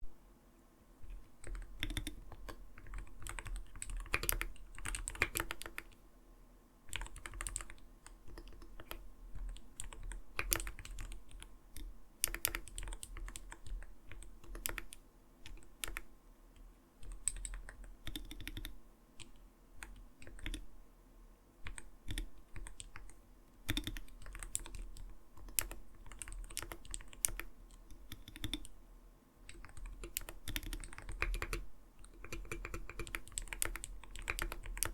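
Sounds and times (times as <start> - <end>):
mechanical keyboard keystroke clacks: 1.4 - 5.9, 6.9 - 16.0, 21.7 - 28.7, 29.5 - 34.9.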